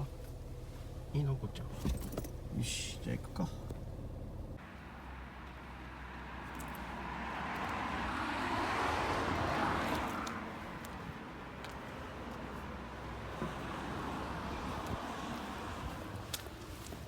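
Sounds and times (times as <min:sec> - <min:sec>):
vehicle passing by: 0:04.7 - 0:16.9.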